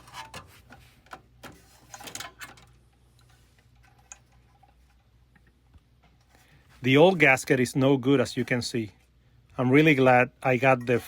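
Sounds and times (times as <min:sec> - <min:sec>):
fan part clicking and scraping: 0:00.0 - 0:06.6.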